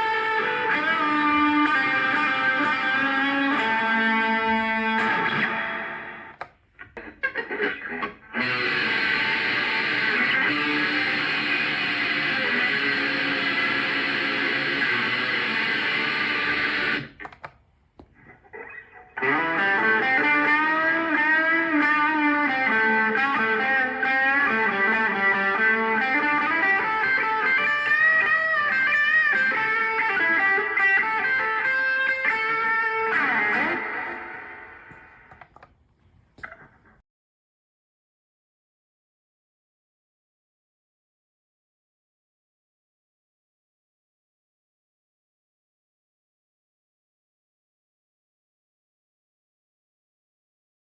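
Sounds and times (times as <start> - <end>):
electric guitar lead line: 0.0 - 17.3, 18.5 - 35.5
electric guitar sustained chord: 8.4 - 17.0.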